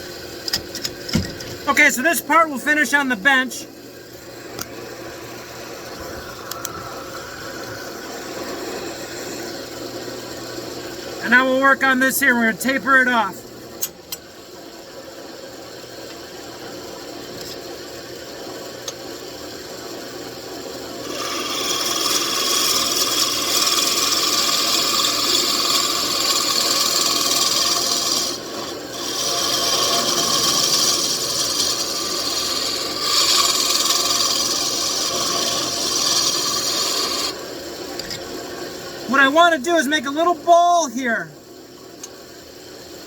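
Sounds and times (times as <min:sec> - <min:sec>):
wood lathe motor humming: 0:04.0 - 0:13.3, 0:20.8 - 0:40.9
chisel scraping spinning wood: 0:04.1 - 0:13.3, 0:20.9 - 0:40.9.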